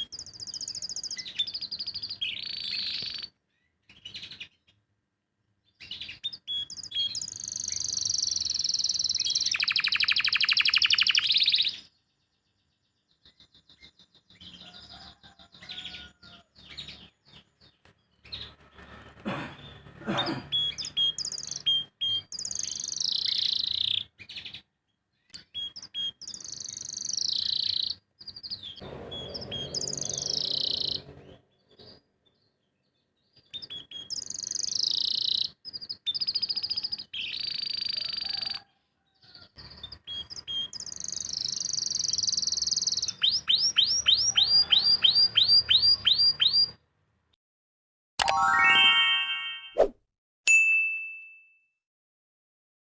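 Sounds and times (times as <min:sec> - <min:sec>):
canary singing trills: 0:00.0 - 0:04.4, 0:05.8 - 0:11.9, 0:19.6 - 0:24.6, 0:25.3 - 0:32.0, 0:33.4 - 0:38.3, 0:39.6 - 0:46.8.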